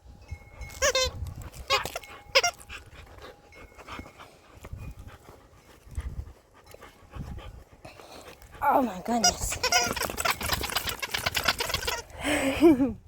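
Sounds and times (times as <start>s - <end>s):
dog breathing: 1.4s - 12.3s
dog scuffling: 9.0s - 12.0s
dog whining yelps: 9.3s - 12.1s.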